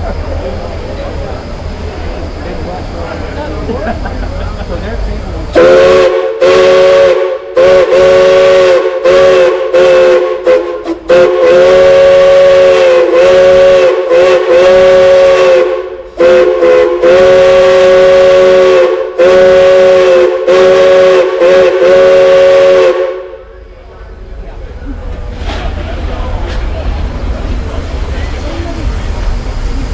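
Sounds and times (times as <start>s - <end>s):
steam chime whistle blasts: 5.6s - 23.4s.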